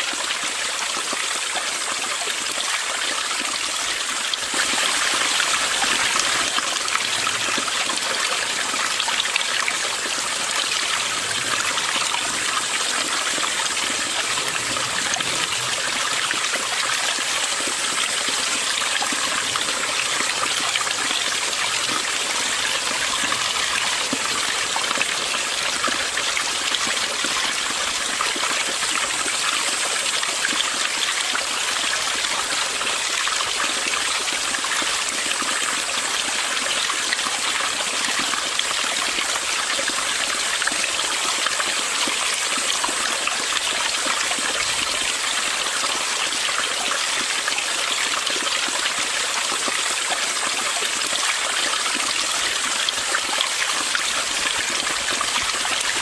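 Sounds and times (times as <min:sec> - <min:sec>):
stream babbling over rocks: 0:00.0 - 0:56.0.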